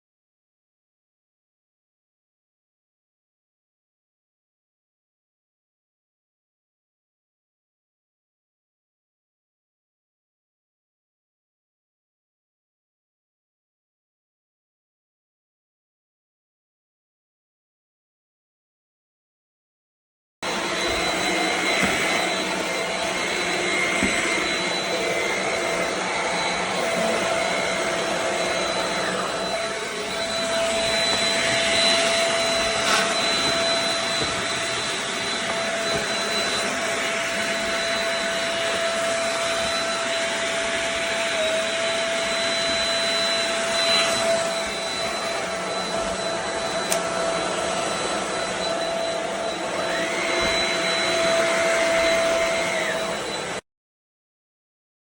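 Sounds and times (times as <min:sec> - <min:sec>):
stick vacuum running: 0:20.5 - 0:53.6.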